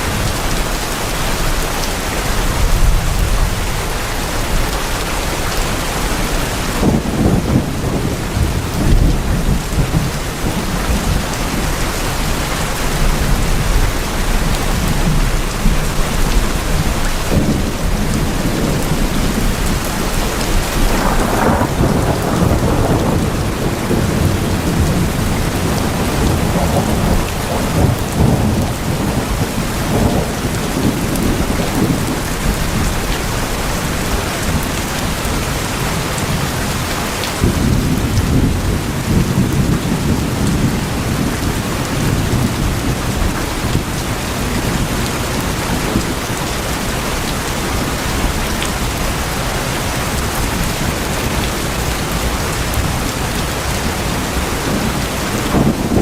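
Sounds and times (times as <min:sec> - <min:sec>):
heavy rain on tin roofs: 0:00.0 - 0:56.0
thunder rumbling: 0:00.0 - 0:56.0.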